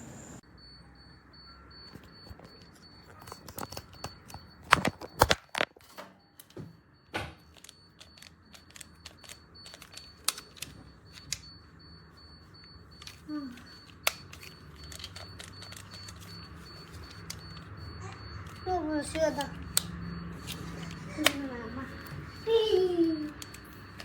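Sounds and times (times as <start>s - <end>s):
faint high whine: 0.0s - 2.6s
hard objects clicking and knocking: 2.0s - 11.5s, 13.0s - 21.4s.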